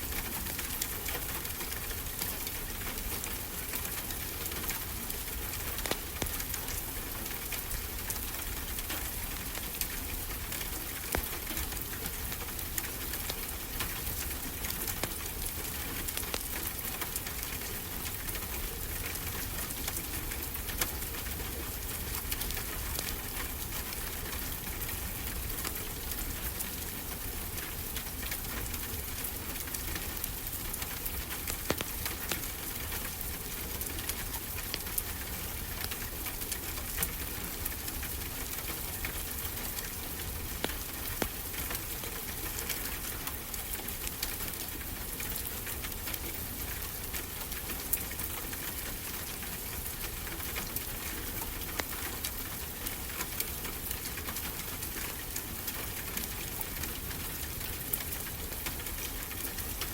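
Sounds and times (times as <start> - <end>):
wood fire crackling and popping: 3.6 - 18.4, 27.6 - 45.5.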